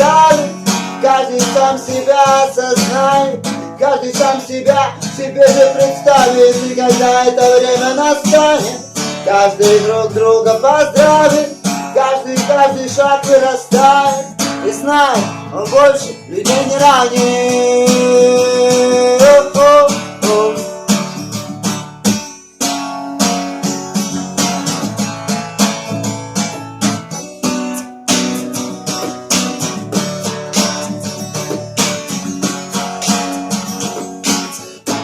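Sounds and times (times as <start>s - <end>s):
person singing: 0.0s - 20.9s
acoustic guitar strumming: 0.0s - 35.0s.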